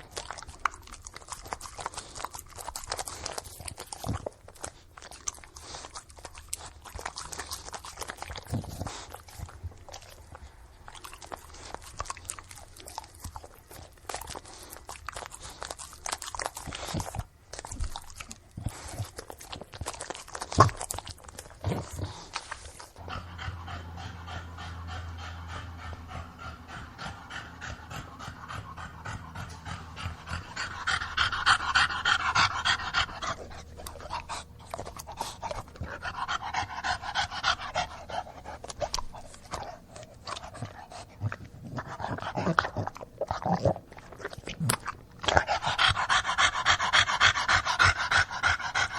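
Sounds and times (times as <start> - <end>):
dog panting heavily: 21.8 - 43.0, 45.3 - 48.9
dog grunting: 22.9 - 39.0, 39.6 - 48.9.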